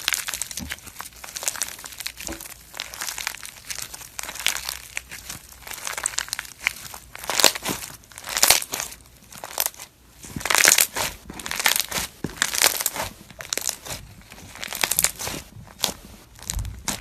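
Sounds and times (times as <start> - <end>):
crunchy slime crackling: 0.0 - 17.0.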